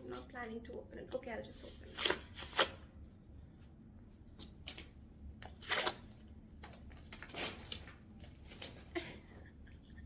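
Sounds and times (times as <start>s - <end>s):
packaging tearing and rustling: 4.6s - 8.9s.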